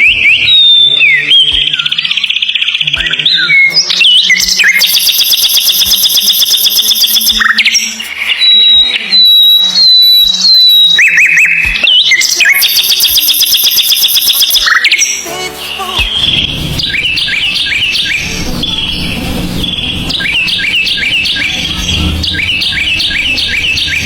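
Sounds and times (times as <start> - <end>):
high whistled bird notes: 0.0 - 24.0
songbird trilling: 0.5 - 15.3, 20.2 - 24.0.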